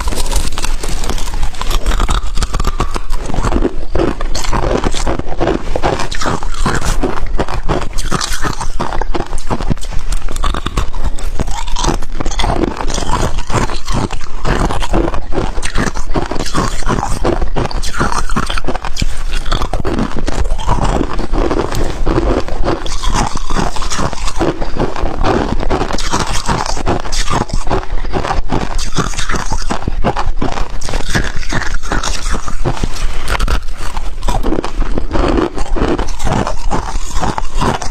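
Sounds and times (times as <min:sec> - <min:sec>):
chewing crunchy ice: 0:00.0 - 0:37.9.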